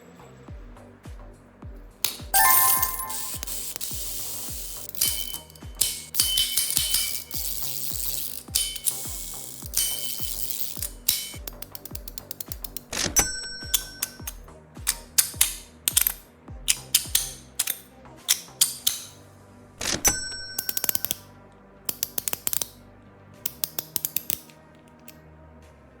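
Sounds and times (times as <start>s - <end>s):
soft background music: 0.0s - 26.0s
fidget toy clicks and snaps: 2.0s - 19.2s, 19.8s - 21.3s, 21.9s - 22.8s, 23.4s - 25.2s
short ring: 2.3s - 7.8s.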